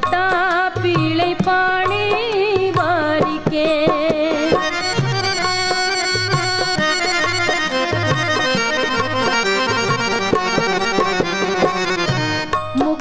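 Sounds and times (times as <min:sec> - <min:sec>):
steady drum rhythm: 0:00.0 - 0:13.0
free-reed instrument melody: 0:04.3 - 0:13.0.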